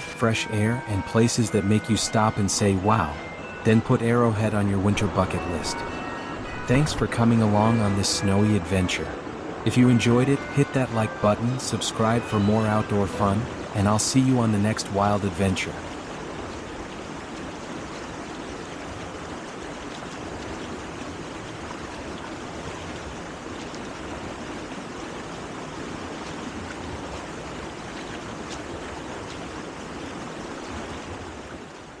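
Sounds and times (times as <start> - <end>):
waterfall rushing: 0.0 - 31.7.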